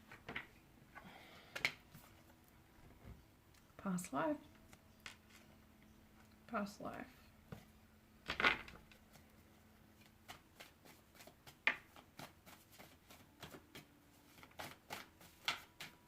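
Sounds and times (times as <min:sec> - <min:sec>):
cards being shuffled: 0:10.0 - 0:16.0.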